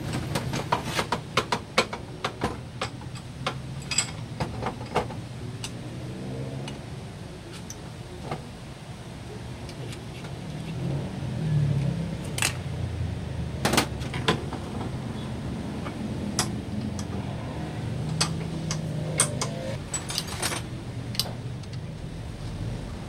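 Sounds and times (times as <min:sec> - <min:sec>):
vehicle engine running: 0:09.3 - 0:20.0, 0:20.6 - 0:23.0
metallic clicks and clinks: 0:18.1 - 0:21.8.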